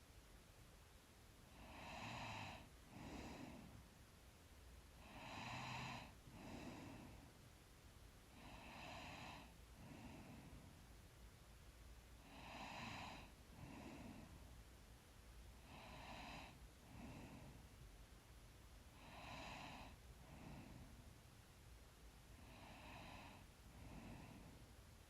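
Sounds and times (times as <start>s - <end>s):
faint slow sleeping breaths: 1.5s - 3.9s, 4.9s - 7.5s, 8.3s - 11.0s, 12.2s - 14.7s, 15.6s - 17.9s, 18.9s - 21.3s, 22.3s - 25.0s.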